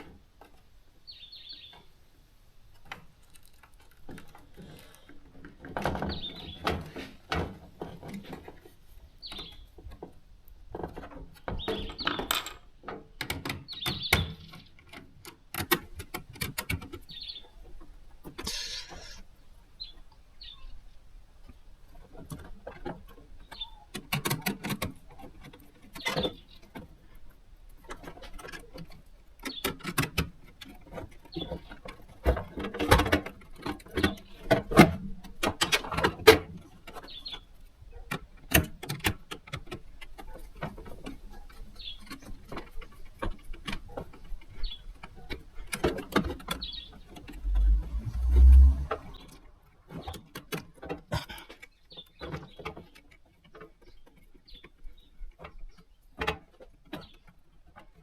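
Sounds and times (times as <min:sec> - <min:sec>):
clicks knocks and rustles: 0:02.7 - 0:18.4.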